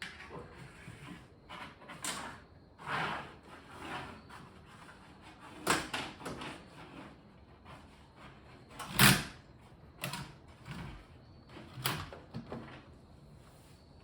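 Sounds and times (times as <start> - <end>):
fish tape scraping in wall: 0.1 - 9.3.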